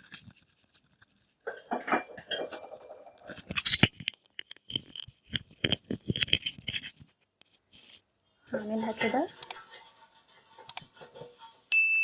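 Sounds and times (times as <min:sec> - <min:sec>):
kitchen items clinking and scraping: 0:01.4 - 0:07.0, 0:07.8 - 0:11.7.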